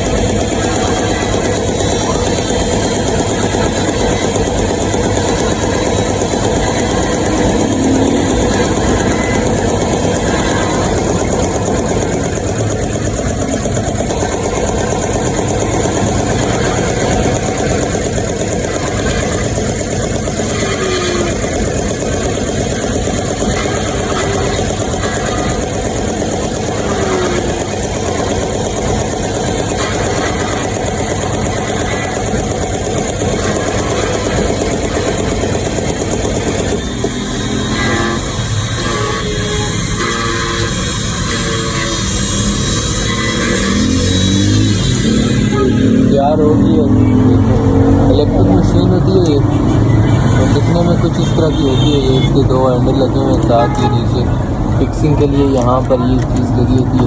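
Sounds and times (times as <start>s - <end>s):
key cutting machine motor: 0.0s - 57.0s.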